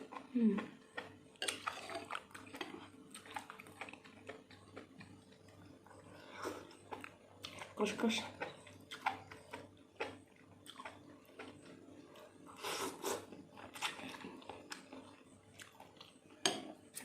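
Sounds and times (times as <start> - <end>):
chewing and biting food: 0.0 - 17.0.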